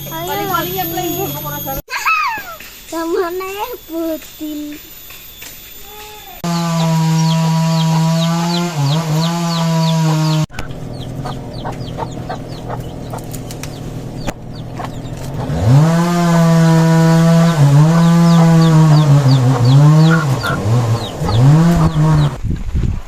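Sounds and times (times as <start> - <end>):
birds chirping: 0.0 - 22.4
chickens clucking: 6.4 - 22.4
small petrol engine revving: 6.4 - 22.4.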